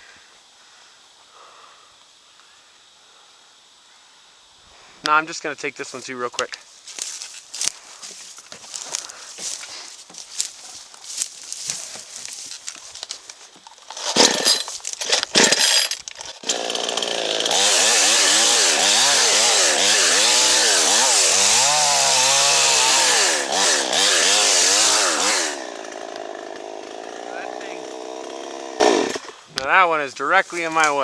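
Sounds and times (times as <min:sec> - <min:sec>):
chainsaw starter rasps: 0:11.5 - 0:29.5
chainsaw cutting wood: 0:13.9 - 0:29.5
chainsaw idling: 0:14.0 - 0:29.6.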